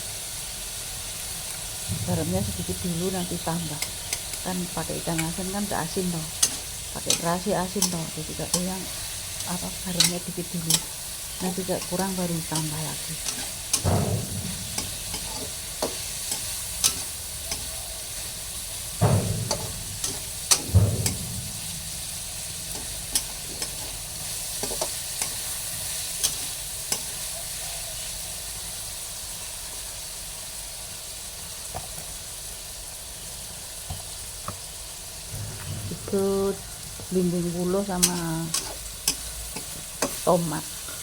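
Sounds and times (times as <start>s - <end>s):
food sizzling in a pan: 0.0s - 41.0s
spatula scraping a pan: 5.1s - 27.6s, 38.0s - 41.0s.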